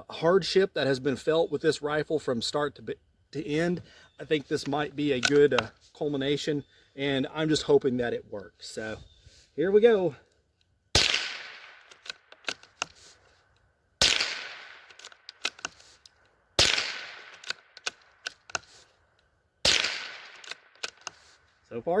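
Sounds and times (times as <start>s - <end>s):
rifle shots with echo: 10.9s - 12.3s, 14.0s - 15.0s, 16.6s - 17.7s, 19.6s - 20.8s
rifle action clicks: 11.0s - 21.2s.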